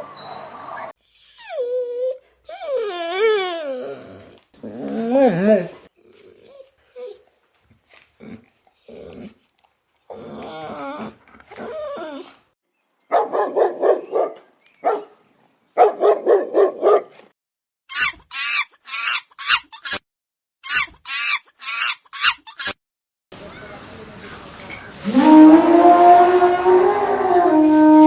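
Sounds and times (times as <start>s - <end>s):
dog barking: 13.1s - 15.2s, 15.8s - 17.2s.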